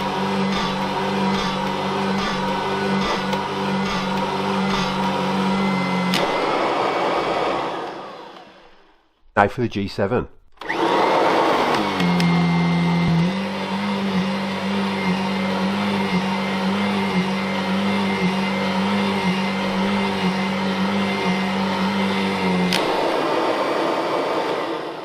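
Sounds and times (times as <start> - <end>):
vacuum motor humming: 0.0 - 9.0, 10.6 - 25.0
click: 11.7 - 12.3, 22.7 - 22.9.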